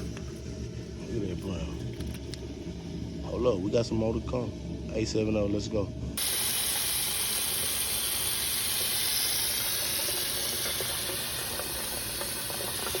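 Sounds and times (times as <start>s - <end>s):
running water hiss: 6.2s - 13.0s.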